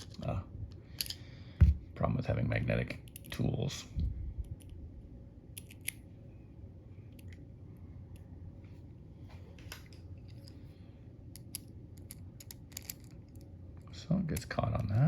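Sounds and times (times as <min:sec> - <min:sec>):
metal padlock parts clicking: 0:03.0 - 0:03.4, 0:05.5 - 0:06.0, 0:11.3 - 0:13.5.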